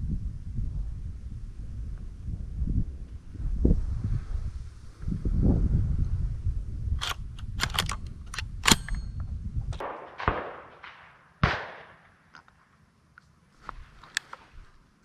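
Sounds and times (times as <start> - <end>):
sharp clicks and rattles: 7.0 - 9.1
shotgun shots with echo: 9.8 - 12.2.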